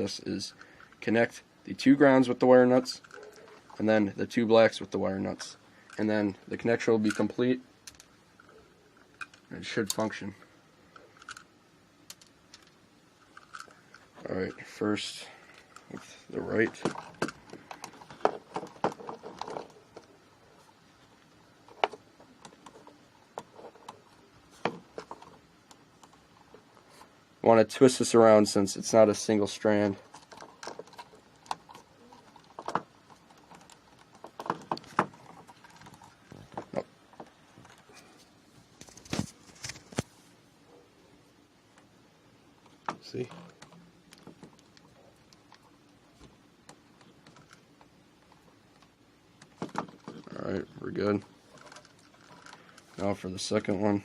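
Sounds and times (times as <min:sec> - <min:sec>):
clicks and scrapes of wires: 0:15.5 - 0:27.2, 0:29.7 - 0:40.2, 0:42.6 - 0:53.2.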